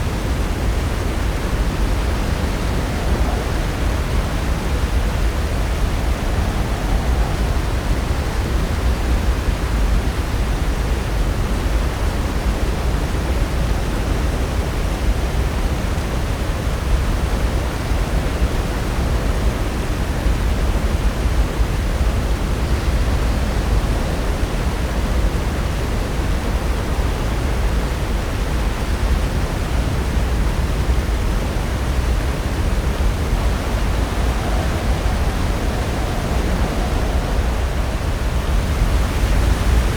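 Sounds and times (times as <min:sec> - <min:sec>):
ocean surf rushing: 0:00.0 - 0:10.5, 0:21.3 - 0:39.9.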